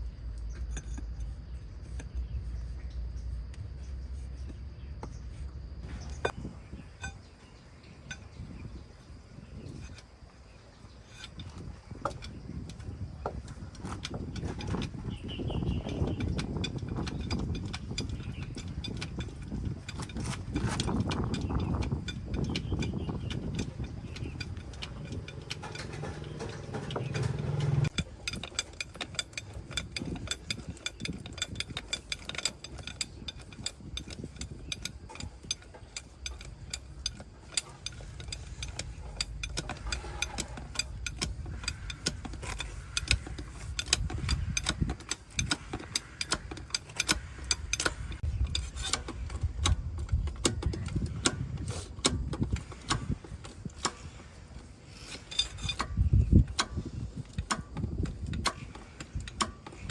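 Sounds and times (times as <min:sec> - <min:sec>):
metal hand tools clanking: 0:11.0 - 0:59.9
low rumble: 0:21.8 - 0:28.0.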